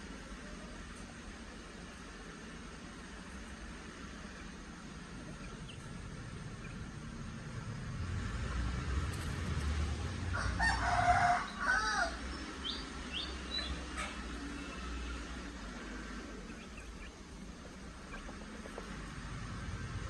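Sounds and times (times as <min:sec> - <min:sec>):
rooster crowing: 0:10.3 - 0:12.4.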